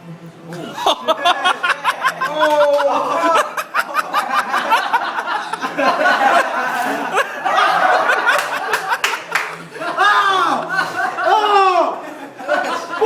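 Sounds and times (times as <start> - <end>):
people laughing and snickering: 0.5 - 13.0.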